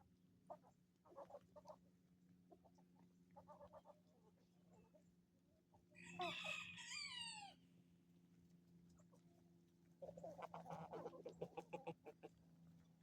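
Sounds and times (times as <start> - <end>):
rooster crowing: 6.0 - 7.6
hens clucking: 10.0 - 12.4.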